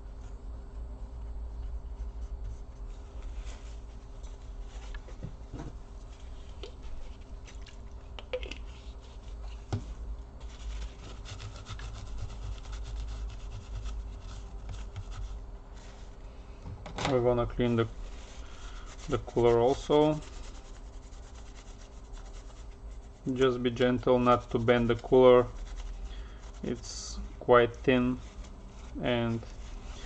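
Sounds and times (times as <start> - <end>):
paper scrubbing on metal: 10.4 - 16.2, 17.3 - 30.0.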